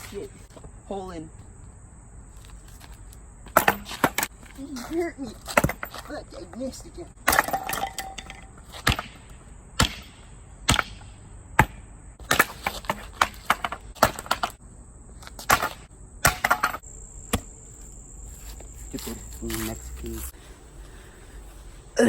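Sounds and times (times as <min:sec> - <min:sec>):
sledgehammer blows on wood: 0:07.3 - 0:14.6.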